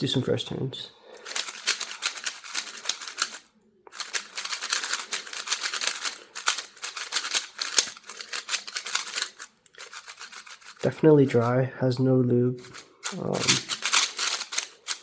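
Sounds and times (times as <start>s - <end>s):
puzzle cube clicking: 1.2s - 10.8s, 12.6s - 15.0s.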